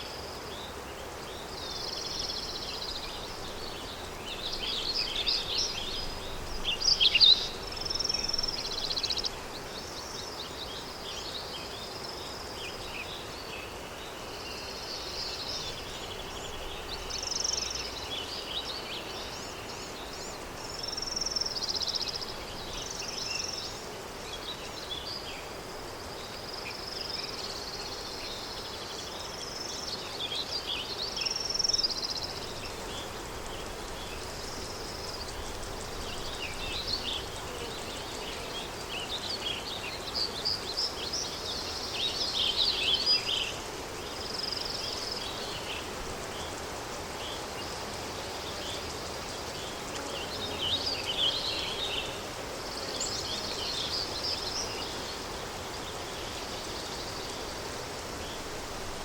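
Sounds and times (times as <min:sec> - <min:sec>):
small birds chirping and trilling: 0:26.2 - 0:59.0.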